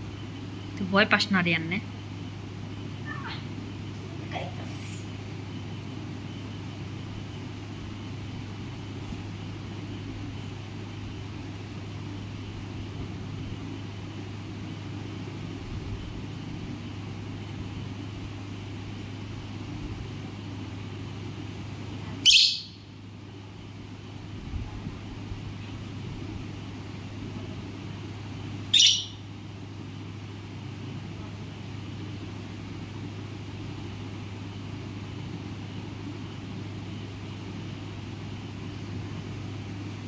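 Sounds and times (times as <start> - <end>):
steady low hum: 0.0 - 40.0
parrot screech: 28.8 - 29.2.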